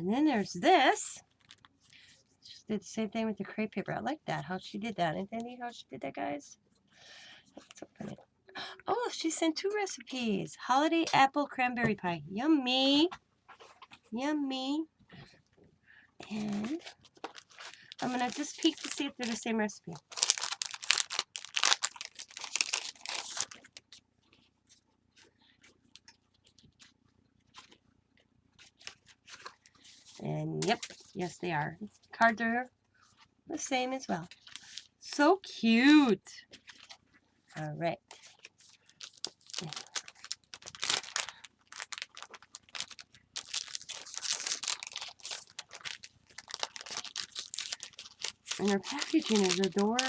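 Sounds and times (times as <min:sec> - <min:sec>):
paper and card rustling: 0:16.3 - 0:27.8, 0:28.6 - 0:32.1, 0:34.0 - 0:35.0, 0:36.4 - 0:37.1, 0:38.0 - 0:50.0.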